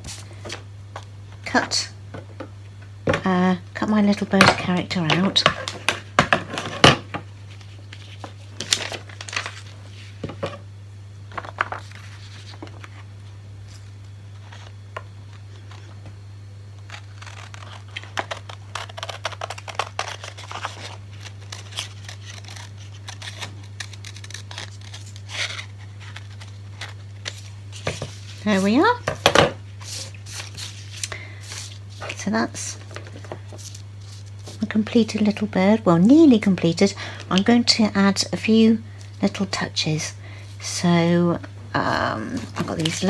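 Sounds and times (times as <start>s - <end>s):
paper rustling: 7.5s - 10.2s, 16.9s - 28.8s, 29.8s - 32.2s, 32.8s - 34.7s, 42.2s - 43.0s
scissors snipping paper: 16.9s - 28.8s, 42.4s - 43.0s.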